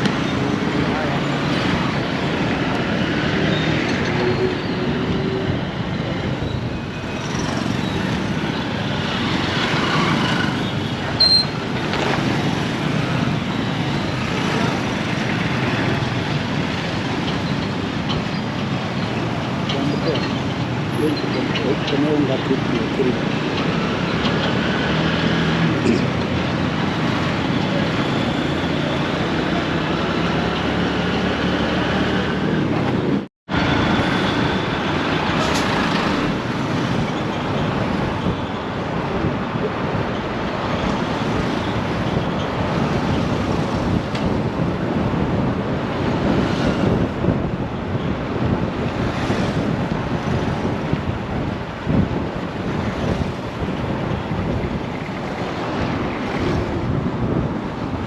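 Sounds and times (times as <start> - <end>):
road traffic: 0.0 - 58.0
wind buffeting microphone: 36.1 - 58.0.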